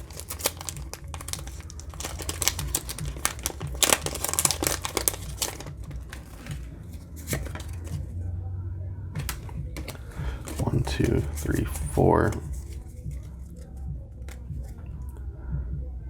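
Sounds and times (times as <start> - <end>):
foil pack crinkling and tearing: 0.0 - 8.0, 9.2 - 13.1.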